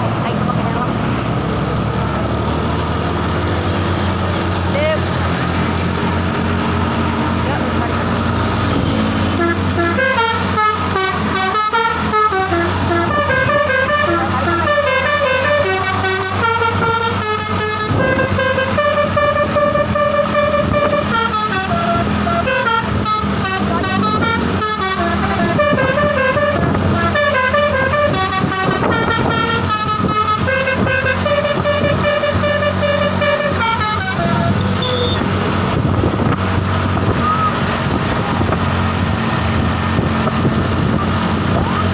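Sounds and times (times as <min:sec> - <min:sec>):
low engine hum: 0:00.0 - 0:41.9
bus horn playing a tune: 0:07.6 - 0:36.3.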